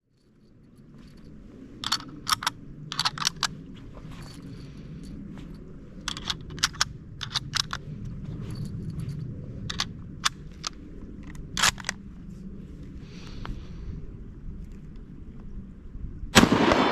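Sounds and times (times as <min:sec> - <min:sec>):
steady low rumble: 0:00.0 - 0:16.9
sharp clicks and clinks: 0:06.0 - 0:07.8.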